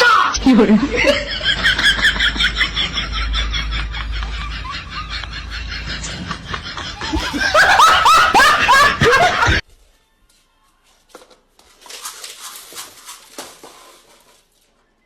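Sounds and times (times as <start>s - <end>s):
person laughing: 0.4s - 9.6s.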